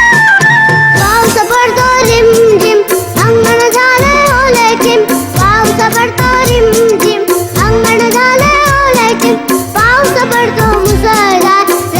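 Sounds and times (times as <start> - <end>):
drum beats: 0.0 - 11.9
person singing: 0.0 - 11.9.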